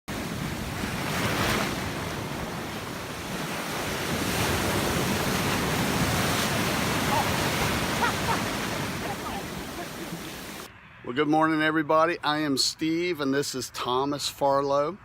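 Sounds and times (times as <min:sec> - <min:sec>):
ocean waves breaking on beach: 0:00.1 - 0:10.7.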